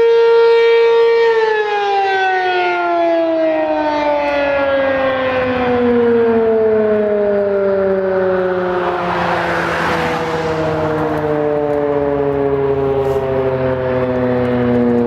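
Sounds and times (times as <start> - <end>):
outdoor warning siren: 0.0 - 15.0
passing vehicle road noise: 4.0 - 15.0.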